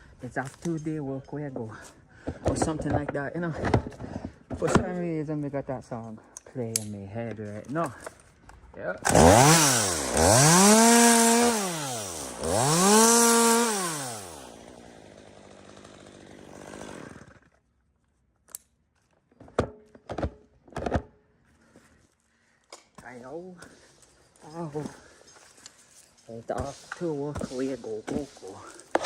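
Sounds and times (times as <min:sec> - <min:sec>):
chainsaw revving: 0:09.0 - 0:17.6.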